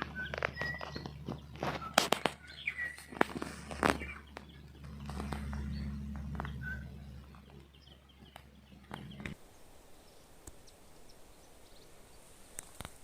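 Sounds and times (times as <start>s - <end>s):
footsteps crunching through undergrowth: 0.0s - 7.5s
low steady rumble: 0.0s - 10.2s
small birds chirping: 0.0s - 13.0s.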